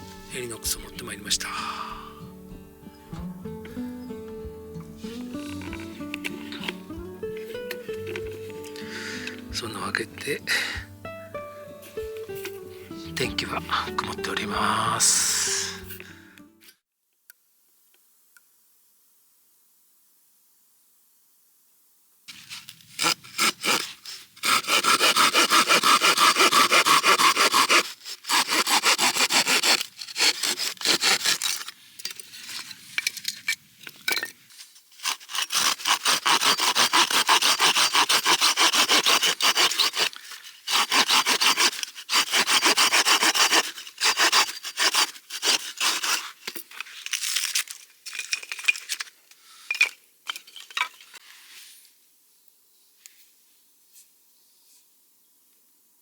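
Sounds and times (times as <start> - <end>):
hand saw cutting wood: 5.0 - 10.9, 22.9 - 31.7, 34.9 - 46.7.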